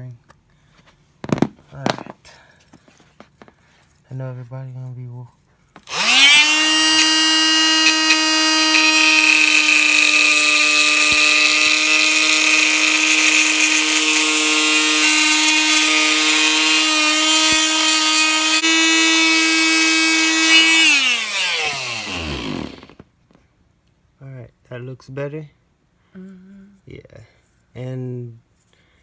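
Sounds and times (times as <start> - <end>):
power tool motor whine: 5.8 - 23.0
gritty cutting hiss: 5.9 - 23.0.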